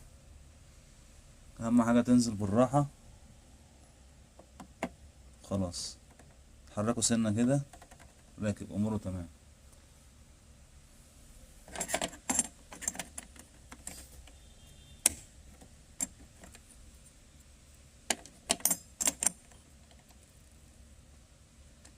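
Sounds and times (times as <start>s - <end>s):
small metal clicks and clinks: 18.1s - 20.1s.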